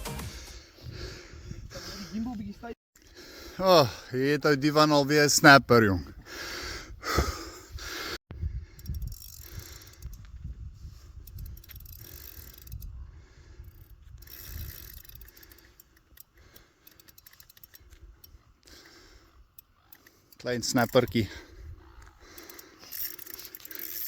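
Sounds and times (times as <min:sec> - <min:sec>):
fishing reel ratchet clicking: 0:08.7 - 0:10.4, 0:11.2 - 0:24.0.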